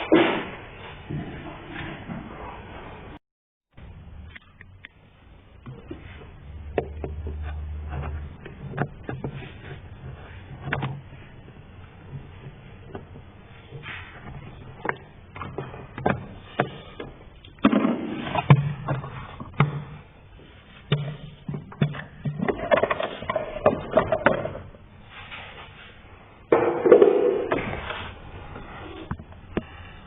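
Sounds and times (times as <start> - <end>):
rubbing and scraping: 5.7 - 19.7.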